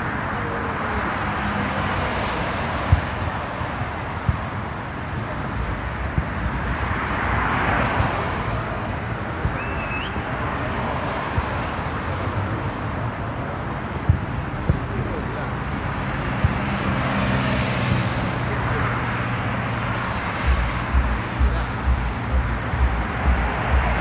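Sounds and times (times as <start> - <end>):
traffic background noise: 0.0 - 24.0
rising whistle: 9.4 - 10.2
dull low thumps: 19.8 - 24.0.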